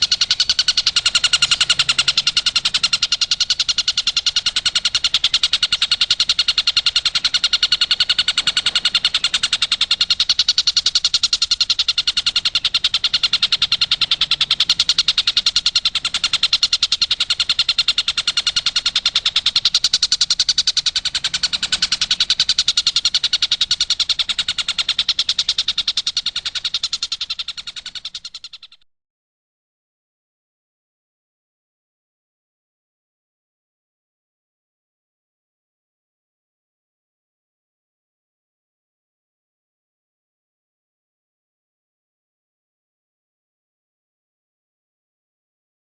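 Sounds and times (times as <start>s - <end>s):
kingfisher rattling call: 0.0s - 28.8s.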